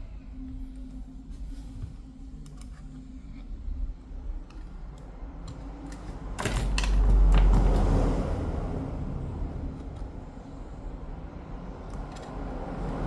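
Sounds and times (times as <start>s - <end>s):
tools and parts clicking and tapping: 4.4s - 8.2s, 11.8s - 13.0s.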